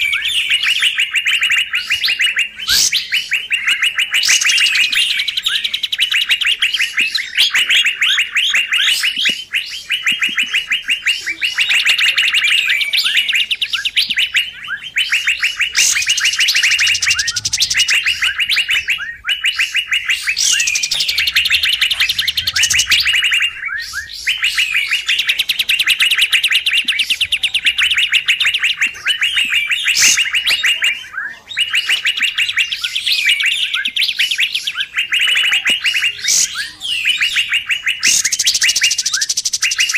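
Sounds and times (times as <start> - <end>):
high swooping whistles: 0.0 - 31.0
bird calls: 0.0 - 39.9
birds chirping fast: 0.0 - 39.9.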